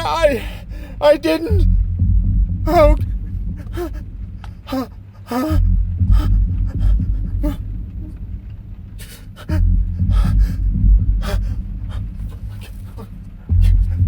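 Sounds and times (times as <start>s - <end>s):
deep rumbling drone: 0.0s - 14.0s
person panting heavily: 0.4s - 1.0s, 3.5s - 4.0s, 4.6s - 7.6s, 9.0s - 14.0s.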